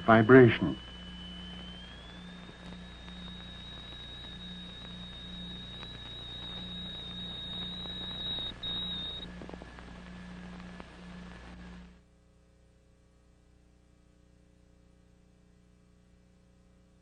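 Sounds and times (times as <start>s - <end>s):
high-pitched test tone: 0.0s - 9.4s
faint low hum: 0.0s - 17.0s.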